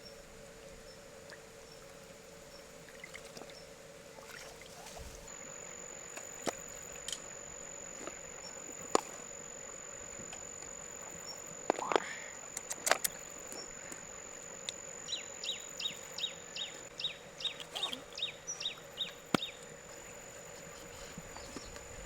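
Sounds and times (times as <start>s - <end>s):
sharp clicks: 11.6s - 14.0s.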